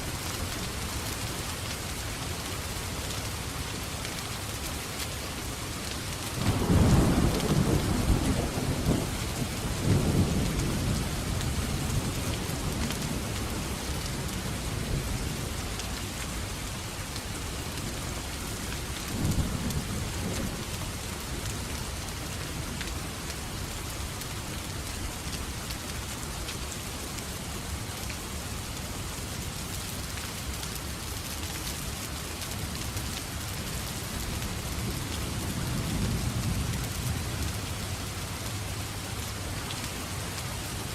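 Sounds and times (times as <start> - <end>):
heavy rain: 0.0 - 40.9
thunder rumbling: 6.4 - 13.6.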